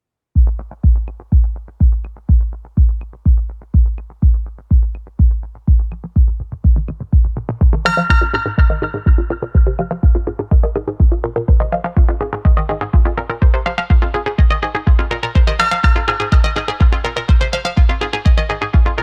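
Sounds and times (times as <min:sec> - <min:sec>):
electronic dance music: 0:00.4 - 0:19.0
heavy kick drum: 0:00.4 - 0:19.0
bright synthesizer: 0:07.8 - 0:19.0.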